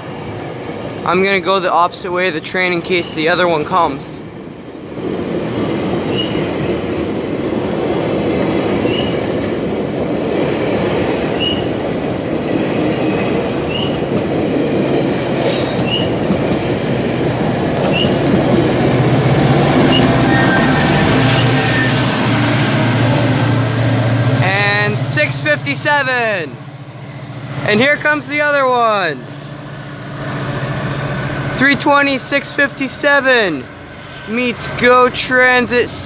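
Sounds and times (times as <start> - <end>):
train wheels rumbling on rails: 0.0 - 36.0
diesel engine drone: 16.7 - 28.2.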